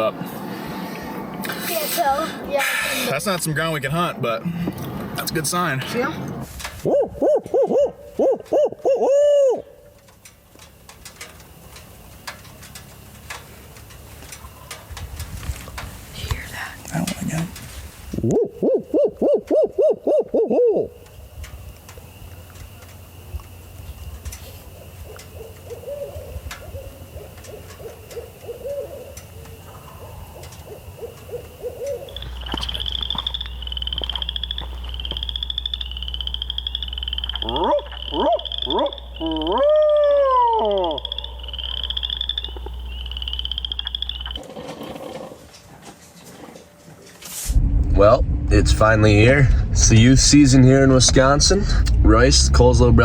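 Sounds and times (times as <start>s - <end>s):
owl hooting: 6.8s - 9.8s, 18.2s - 21.0s, 25.1s - 44.4s
frog chorus trilling: 25.0s - 44.6s
steady low hum: 47.4s - 53.0s.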